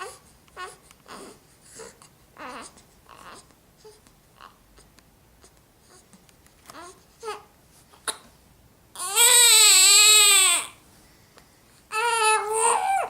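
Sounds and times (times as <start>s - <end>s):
baby crying: 0.0s - 3.5s, 9.0s - 10.8s, 11.9s - 13.0s.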